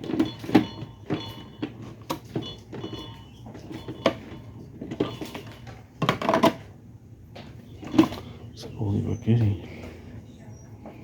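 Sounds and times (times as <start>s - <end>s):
items knocking and clicking: 0.0s - 8.4s.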